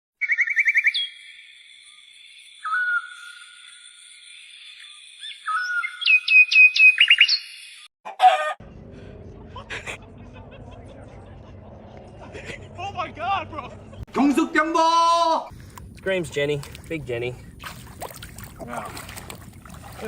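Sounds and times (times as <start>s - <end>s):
bird whistling and trilling: 0.2s - 2.0s, 2.6s - 3.9s, 4.6s - 7.9s
outdoor background noise: 0.2s - 20.0s.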